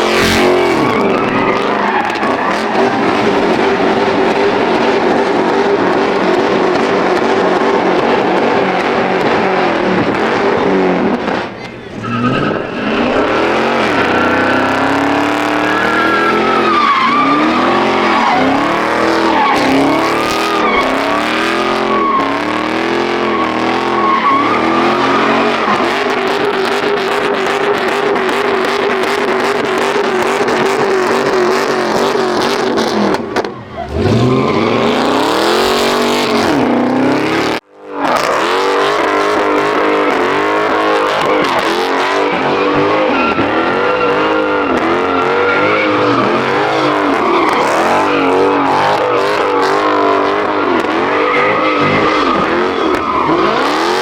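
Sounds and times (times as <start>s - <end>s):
tyres squealing: 0.0s - 4.5s, 11.4s - 28.3s, 32.9s - 36.6s, 39.4s - 54.0s
car engine revving hard: 0.0s - 54.0s.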